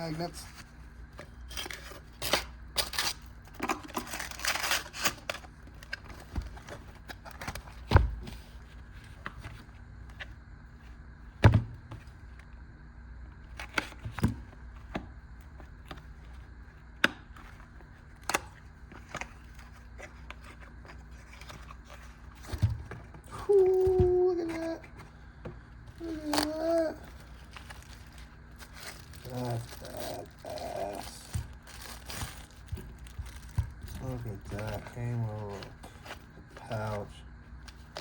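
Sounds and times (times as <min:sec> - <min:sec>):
packaging rustling: 0:00.1 - 0:09.0, 0:17.6 - 0:38.0.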